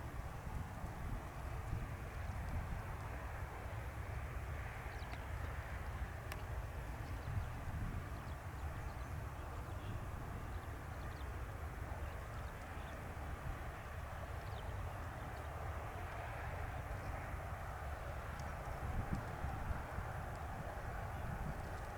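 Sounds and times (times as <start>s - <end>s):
wind buffeting microphone: 7.2s - 8.8s, 18.2s - 21.9s.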